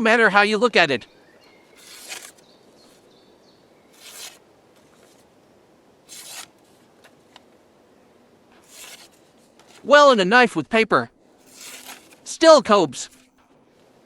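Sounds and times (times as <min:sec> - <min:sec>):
knife slicing paper: 0:01.8 - 0:03.0, 0:03.9 - 0:04.4, 0:06.1 - 0:06.6, 0:08.6 - 0:09.9, 0:11.4 - 0:12.3.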